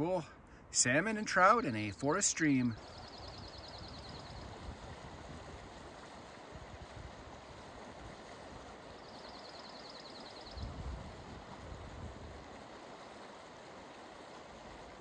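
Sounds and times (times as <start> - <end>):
stream water rushing: 0.8 - 15.0.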